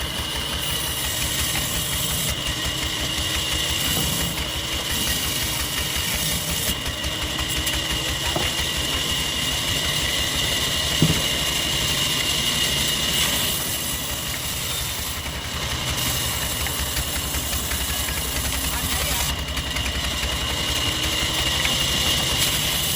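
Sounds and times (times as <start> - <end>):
engine running: 0.0 - 22.9
sharp knock: 11.0 - 11.5.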